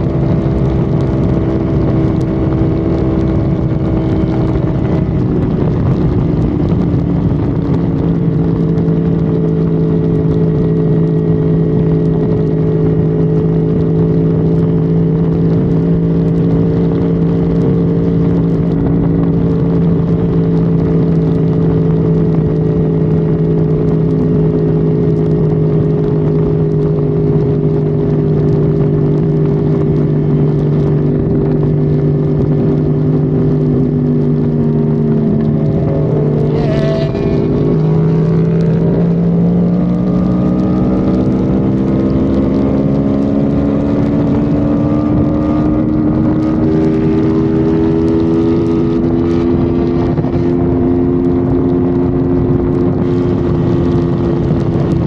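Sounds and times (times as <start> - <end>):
engine droning at speed: 0.0 - 55.0
road and wind noise: 0.0 - 55.0.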